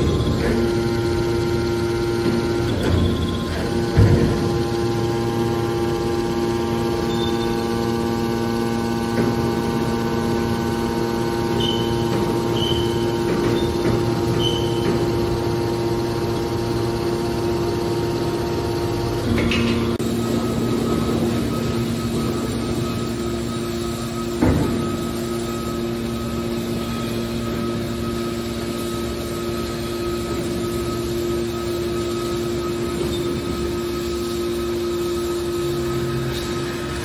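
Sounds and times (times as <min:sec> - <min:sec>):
baler motor and pump humming: 0:00.0 - 0:37.0
metal clunk: 0:02.2 - 0:04.6, 0:24.4 - 0:25.2
short high squeaks: 0:07.1 - 0:07.8, 0:11.5 - 0:15.2.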